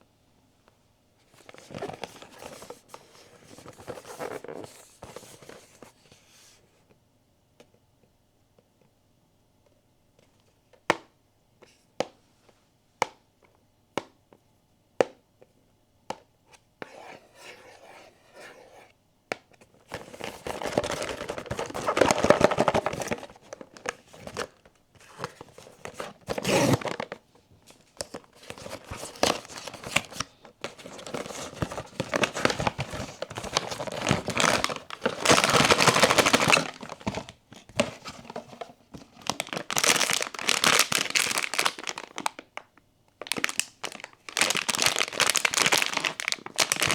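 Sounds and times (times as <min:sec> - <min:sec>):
packaging tearing and crinkling: 0:19.9 - 0:27.2, 0:28.0 - 0:42.6, 0:43.2 - 0:46.9.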